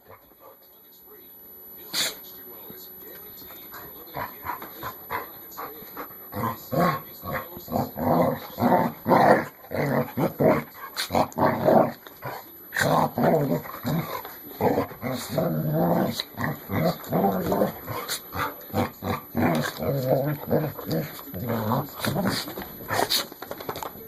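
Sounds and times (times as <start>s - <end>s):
dogs growling in play: 4.1s - 23.3s.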